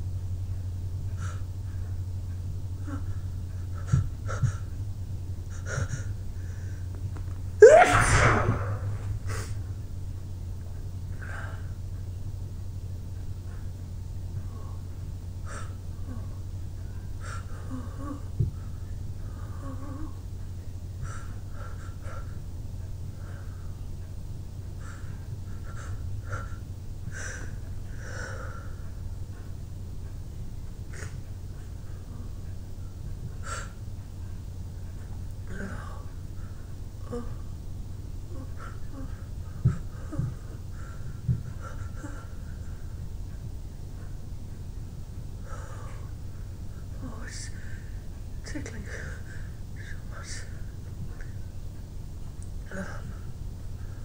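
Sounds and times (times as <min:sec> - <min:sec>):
steady low hum: 0:00.0 - 0:54.0
person breathing hard: 0:01.1 - 0:01.9, 0:02.8 - 0:04.8, 0:05.5 - 0:07.0, 0:24.8 - 0:29.6
person sneezing: 0:07.6 - 0:09.6.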